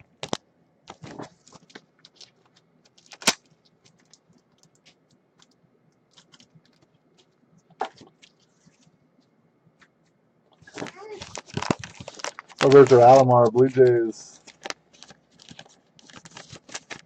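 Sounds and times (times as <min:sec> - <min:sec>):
cards shuffling: 0:10.6 - 0:17.0.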